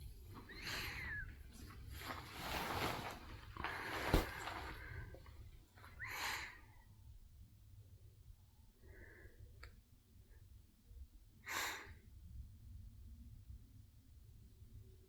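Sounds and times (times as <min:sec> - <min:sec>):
soft breathy exhales: 0:00.4 - 0:01.4, 0:02.0 - 0:05.2.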